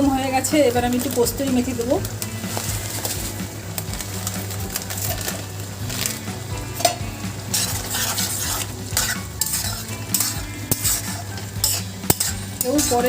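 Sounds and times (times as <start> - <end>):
food sizzling: 0.0 - 13.0
spatula scraping a pan: 4.0 - 13.0.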